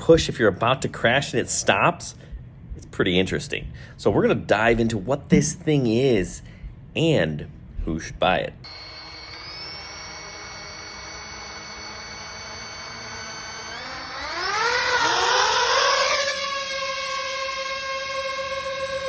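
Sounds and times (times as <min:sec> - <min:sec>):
drone propellers whirring: 0:08.6 - 0:19.0.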